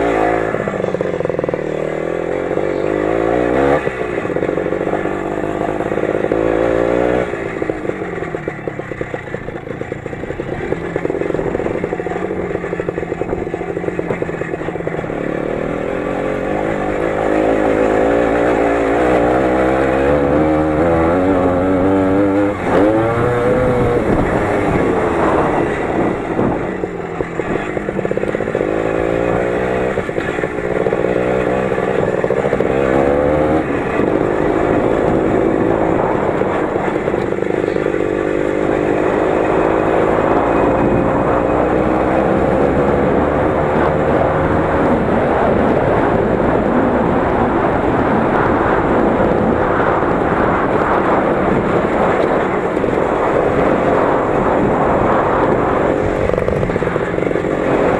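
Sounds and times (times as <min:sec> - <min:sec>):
tractor engine running under load: 0:00.0 - 0:57.9.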